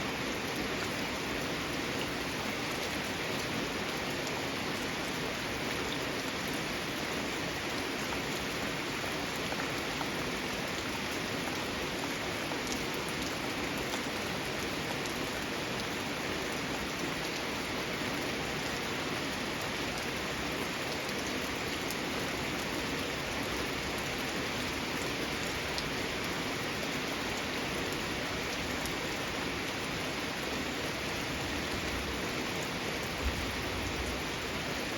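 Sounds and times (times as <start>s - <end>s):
steady rain hiss: 0.0s - 34.9s.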